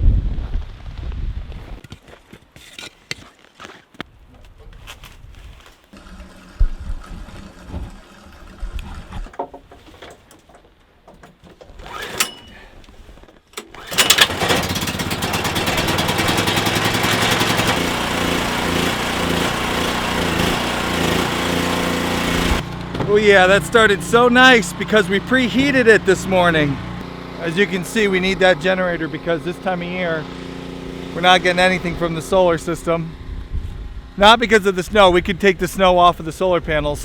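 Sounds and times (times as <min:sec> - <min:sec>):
generator engine starting and running: 0:05.9 - 0:09.4, 0:11.8 - 0:12.6, 0:13.6 - 0:34.4.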